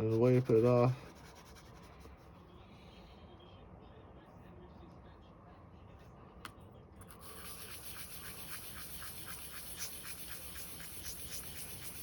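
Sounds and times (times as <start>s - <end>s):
gear scraping on sandpaper: 7.2s - 12.0s.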